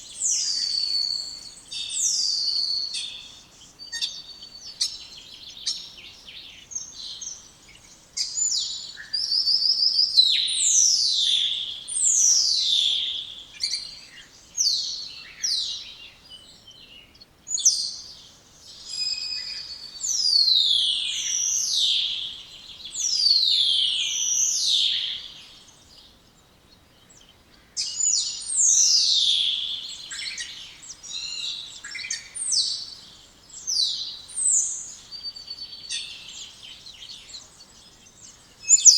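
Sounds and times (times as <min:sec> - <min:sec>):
starling singing whistles and clicks: 0:38.7 - 0:38.9.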